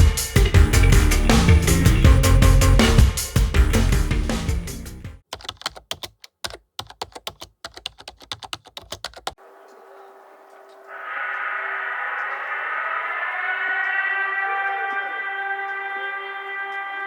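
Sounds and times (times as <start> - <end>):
background music: 0.0 - 5.2, 13.6 - 17.0
rapid irregular clicks: 5.2 - 9.4.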